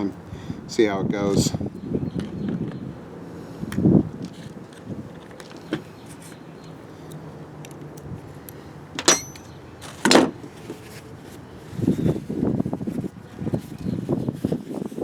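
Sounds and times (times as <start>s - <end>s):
metal tools clicking: 9.0s - 9.5s
sharp metallic clink: 9.0s - 9.6s.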